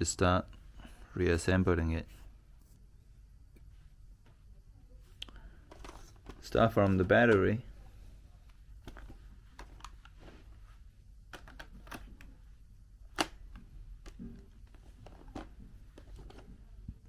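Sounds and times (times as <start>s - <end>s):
plastic parts clicking and knocking: 11.3s - 12.3s, 13.1s - 16.5s.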